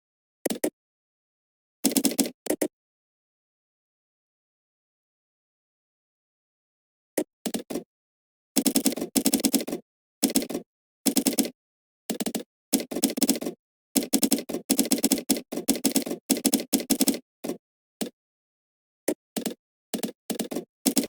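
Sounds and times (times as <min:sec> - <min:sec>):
typing on a computer keyboard: 0:01.8 - 0:02.7, 0:08.6 - 0:18.2, 0:19.1 - 0:21.0.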